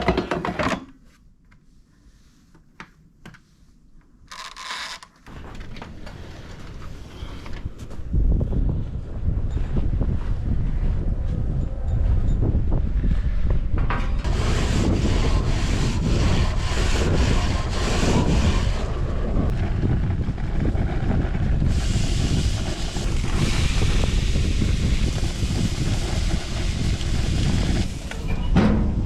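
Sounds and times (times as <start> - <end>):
blizzard wind gusting on microphone: 5.6 - 29.0.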